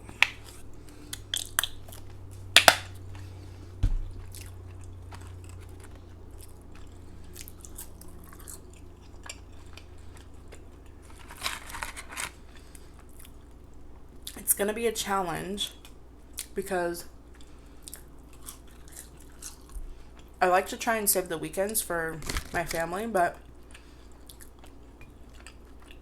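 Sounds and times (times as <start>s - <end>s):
chewing food: 0.0s - 14.4s, 17.2s - 20.4s, 23.4s - 26.0s
crunching and crackling: 0.0s - 14.4s, 22.2s - 26.0s.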